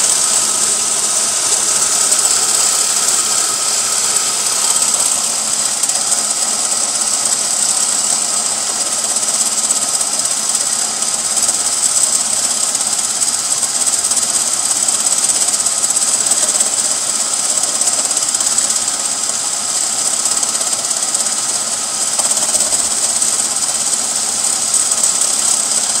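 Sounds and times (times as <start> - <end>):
car engine running: 0.0 - 12.4
high hiss: 0.0 - 26.0
steady rattling noise: 0.0 - 26.0.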